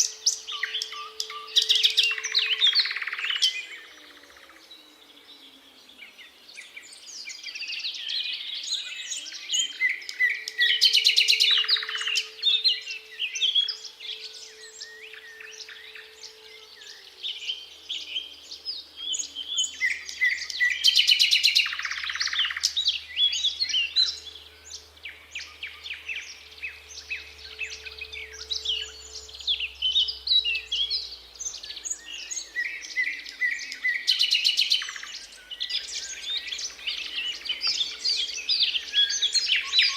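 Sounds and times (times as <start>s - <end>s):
faint siren wailing: 0.0s - 5.9s, 11.4s - 20.1s, 23.9s - 33.8s
nightingale singing: 0.0s - 39.9s.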